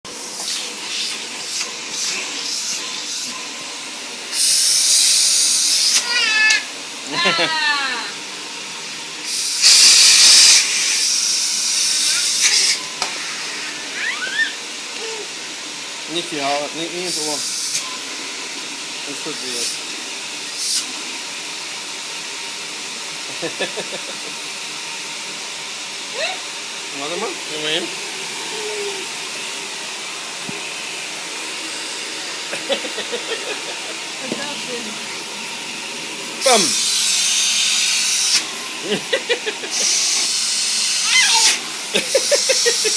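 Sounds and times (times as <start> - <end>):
vacuum cleaner running: 0.1 - 42.9
sharp hiss: 4.3 - 6.0, 9.2 - 12.8.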